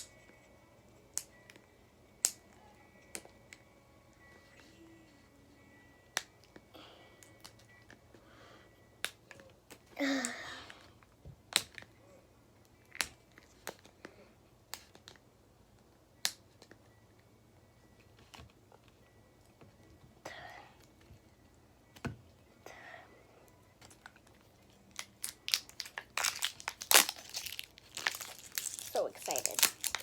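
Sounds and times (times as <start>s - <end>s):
plastic packaging clicking: 24.9s - 30.0s.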